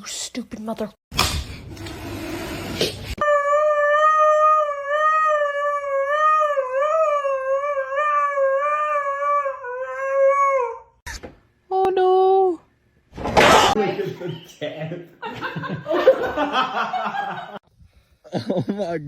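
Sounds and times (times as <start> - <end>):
dog howling: 3.2 - 11.0.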